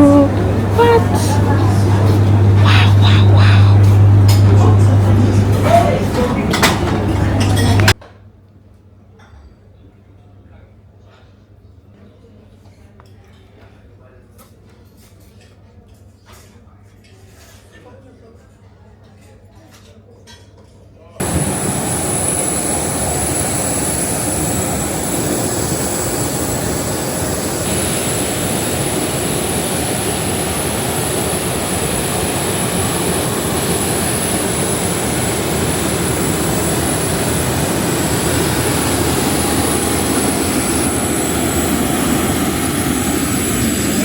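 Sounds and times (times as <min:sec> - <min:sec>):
faint high whine: 0:00.0 - 0:08.0, 0:21.2 - 0:44.0
jet engine and airflow rush: 0:00.0 - 0:08.0, 0:21.2 - 0:44.0.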